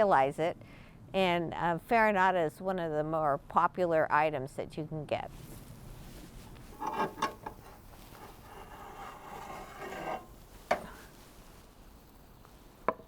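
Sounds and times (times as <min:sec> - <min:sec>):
metal skillet scraping: 0:06.5 - 0:11.6.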